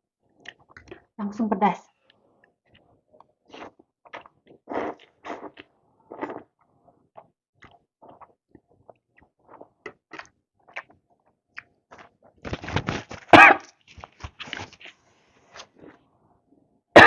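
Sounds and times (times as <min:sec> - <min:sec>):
chewing and mouth sounds: 0:00.4 - 0:01.1, 0:02.4 - 0:12.4.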